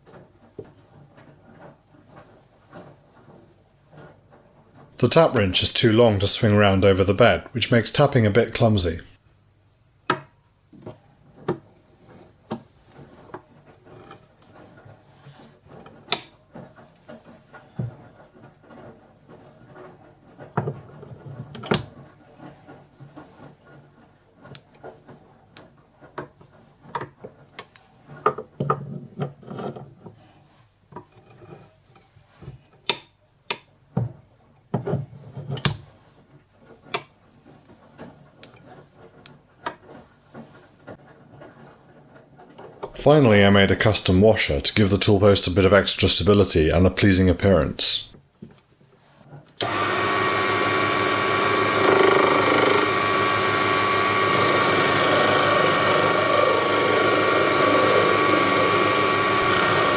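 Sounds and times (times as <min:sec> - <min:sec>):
wrench clicks and knocks: 0:54.3 - 0:58.6, 0:59.4 - 0:59.9.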